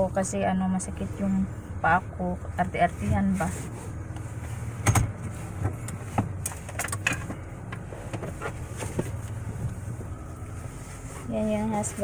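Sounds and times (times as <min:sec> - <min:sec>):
low vehicle engine hum: 0:00.0 - 0:12.0
sharp clicks and knocks: 0:04.8 - 0:09.1.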